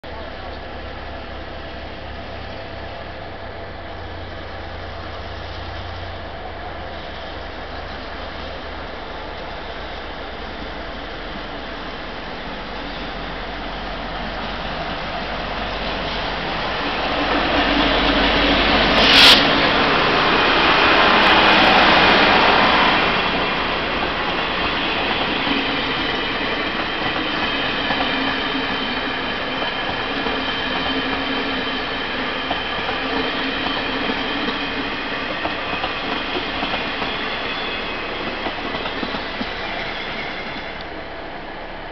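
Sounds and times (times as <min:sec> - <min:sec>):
train rushing past: 0:00.1 - 0:41.9
faint wheel squeal: 0:39.1 - 0:40.8.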